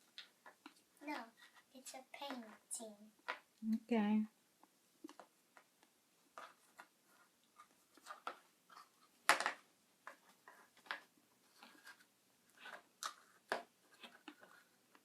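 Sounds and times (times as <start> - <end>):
plastic toys clicking and tapping: 0.1 - 2.6, 3.2 - 3.5, 7.5 - 11.9.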